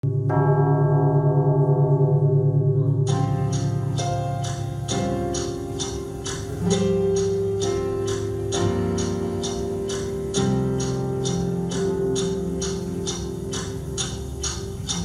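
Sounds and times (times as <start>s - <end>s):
sustained chords: 0.0s - 15.0s
ticking beat: 3.1s - 15.0s.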